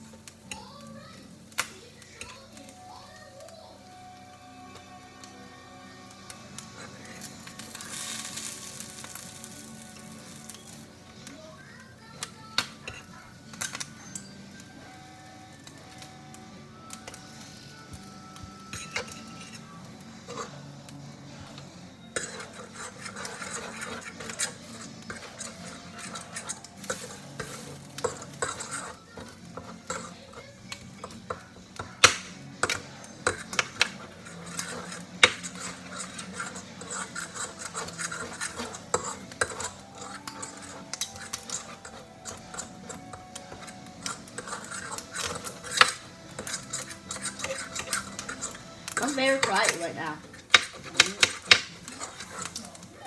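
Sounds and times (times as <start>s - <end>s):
faint sizzle: 0.0s - 53.0s
utensil scraping food in a pan: 0.0s - 53.0s
metal tapping against pan: 1.5s - 2.9s, 12.1s - 52.9s.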